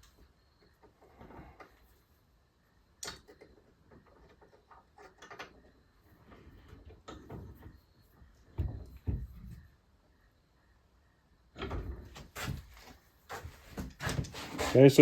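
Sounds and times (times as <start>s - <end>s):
hand tools clicking and clunking: 11.6s - 15.0s.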